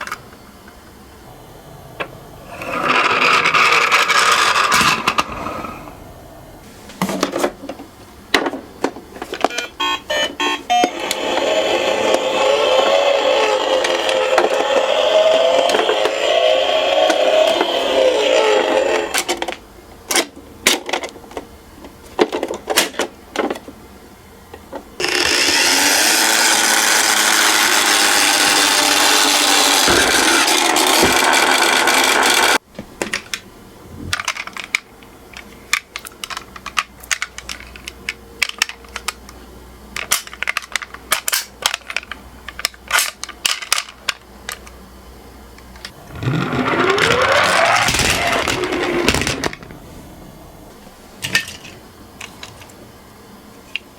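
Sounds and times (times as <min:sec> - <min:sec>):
toy car rolling noise: 0:02.5 - 0:05.4, 0:09.4 - 0:19.6, 0:25.0 - 0:32.6, 0:46.0 - 0:49.7
toy cars clattering on track: 0:02.6 - 0:05.3, 0:25.0 - 0:33.4, 0:46.1 - 0:49.7
rising tone: 0:09.6 - 0:19.2.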